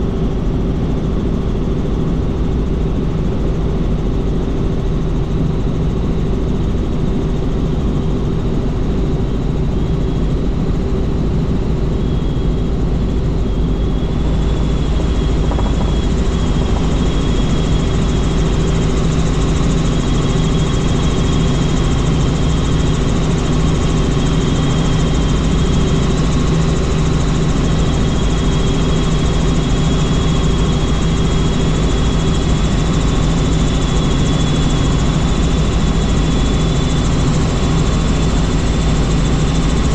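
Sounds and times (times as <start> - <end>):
helicopter rotor and engine noise: 0.0 - 39.9
faint high whine: 11.9 - 21.1.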